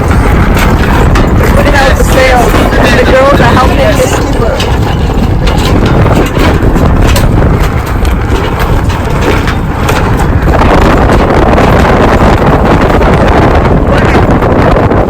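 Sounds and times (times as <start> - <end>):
knocks and clicks: 0.0 - 14.5
wind buffeting microphone: 0.0 - 15.0.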